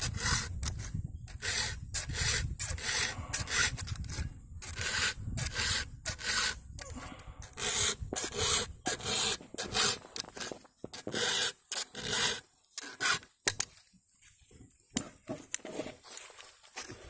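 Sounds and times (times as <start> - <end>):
file rasping on chain: 0.0 - 6.6, 7.4 - 13.2.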